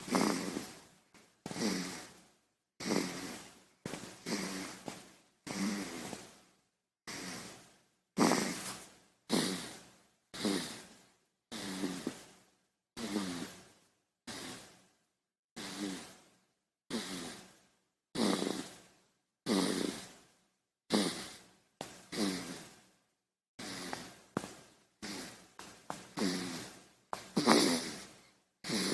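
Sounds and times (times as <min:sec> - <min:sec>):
baby snoring: 0:00.0 - 0:00.9, 0:01.5 - 0:02.2, 0:02.8 - 0:06.4, 0:07.1 - 0:12.3, 0:13.0 - 0:13.7, 0:14.3 - 0:14.8, 0:15.6 - 0:16.2, 0:16.9 - 0:17.6, 0:18.2 - 0:18.8, 0:19.4 - 0:20.2, 0:20.9 - 0:21.5, 0:22.1 - 0:22.8, 0:23.6 - 0:24.2, 0:25.0 - 0:28.9.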